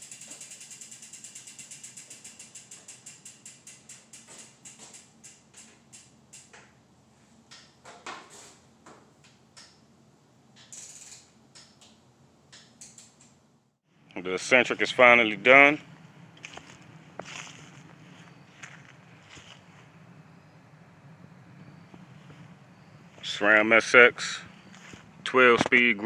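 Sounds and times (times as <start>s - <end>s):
bicycle freehub ratcheting: 0.0s - 6.6s, 10.6s - 12.0s, 12.6s - 13.3s
rapid pawl clicks: 0.0s - 6.6s.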